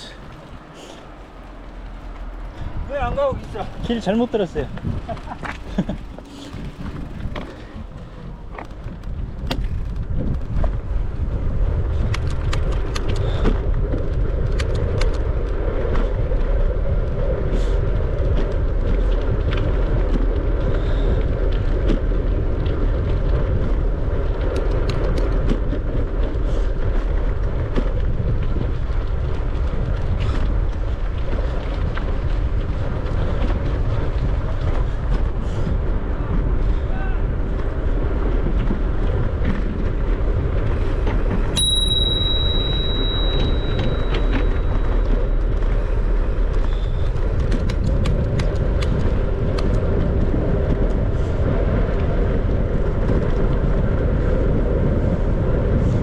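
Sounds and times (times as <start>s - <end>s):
bicycle tyre noise: 0.0s - 56.0s
wind rumbling on microphone: 0.0s - 56.0s.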